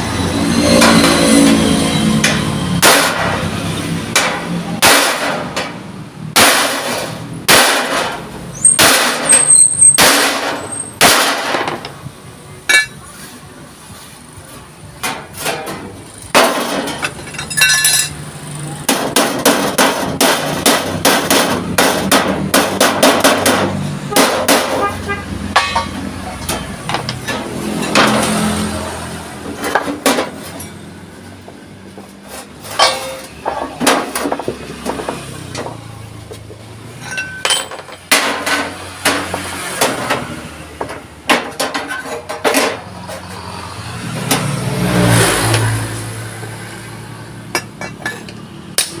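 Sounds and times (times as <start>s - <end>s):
hammer striking steel plate: 0.8s - 3.5s, 4.1s - 11.9s, 12.7s - 13.0s, 18.8s - 24.9s, 25.5s - 28.3s.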